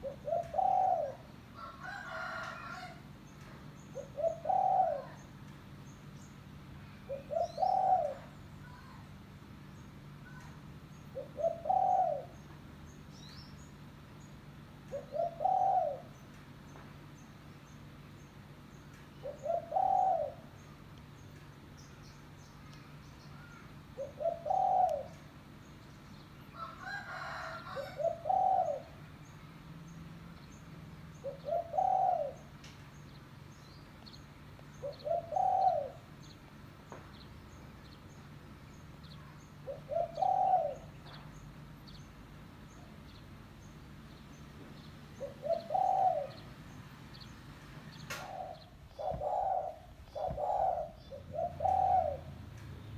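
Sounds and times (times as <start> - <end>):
dove cooing: 0.0 - 3.0, 3.8 - 5.3, 6.9 - 8.4, 10.3 - 12.5, 14.8 - 16.3, 19.2 - 20.7, 23.4 - 25.5, 26.5 - 29.1, 31.1 - 32.6, 34.7 - 36.4, 39.1 - 41.4, 45.1 - 47.2, 48.0 - 52.8.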